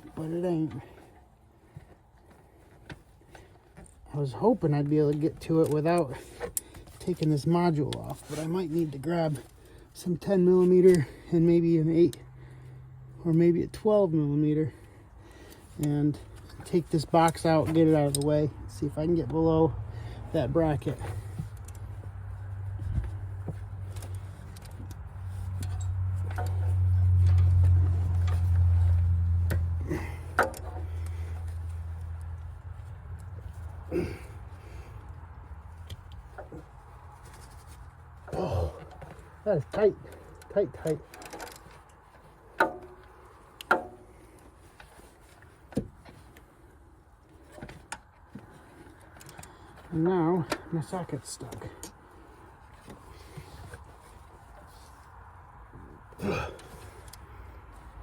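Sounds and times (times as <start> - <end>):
steady low hum: 14.1 - 58.0
tools clicking and tapping: 30.3 - 31.6, 38.8 - 44.1.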